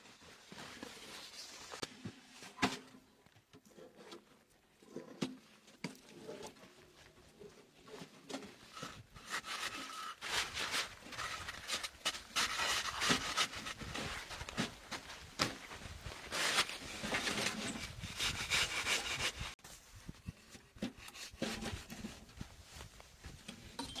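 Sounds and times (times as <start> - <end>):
rasping scraping strokes: 8.6 - 14.2, 16.3 - 19.6.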